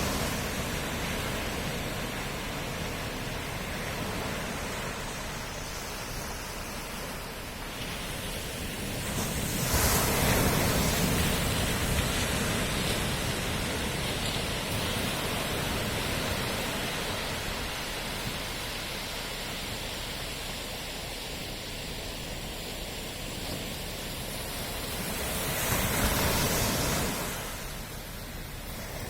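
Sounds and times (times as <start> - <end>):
sea waves crashing: 0.0 - 29.0
surf hissing: 0.0 - 29.0.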